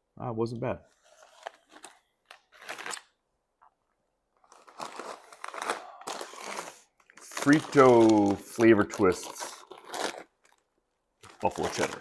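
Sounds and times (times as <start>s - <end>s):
plastic bag crinkling: 4.4s - 12.0s.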